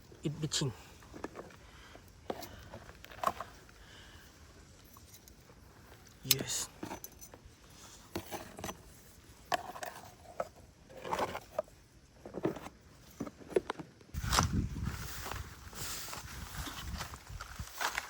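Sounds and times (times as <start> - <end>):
scraping and rustling: 6.7 - 17.0.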